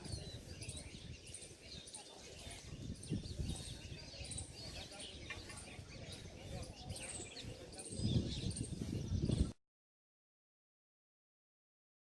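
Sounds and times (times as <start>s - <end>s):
birds chirping: 0.0s - 9.6s.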